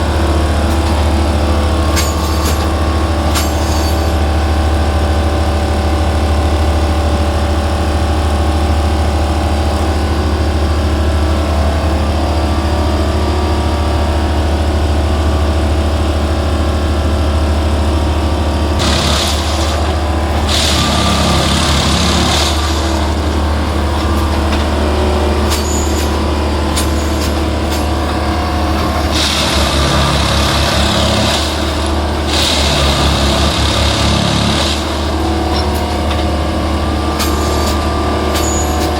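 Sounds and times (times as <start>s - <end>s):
diesel engine droning: 0.0s - 38.9s
loud hissing: 18.8s - 35.2s.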